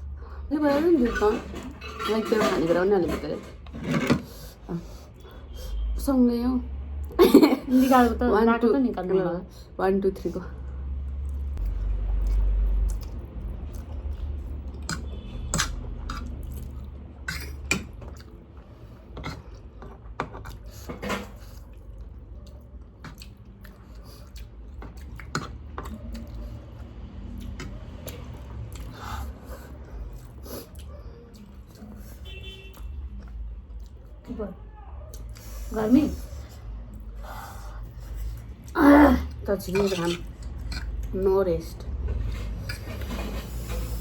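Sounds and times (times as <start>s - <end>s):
chewing: 11.0s - 34.3s, 37.8s - 41.2s.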